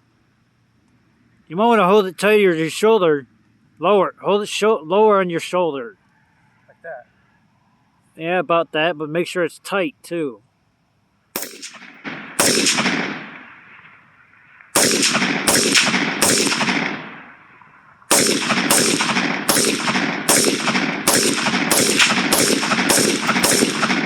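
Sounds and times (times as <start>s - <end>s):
rifle gunshots with echo: 11.4s - 14.0s, 14.7s - 24.0s.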